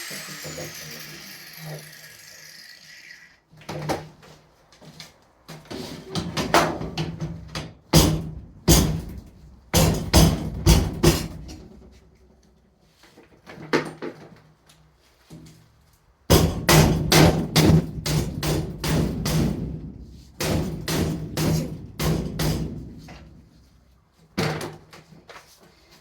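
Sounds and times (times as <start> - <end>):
power tool whine: 0.0 - 3.4
metal knocks and bangs: 6.2 - 11.6.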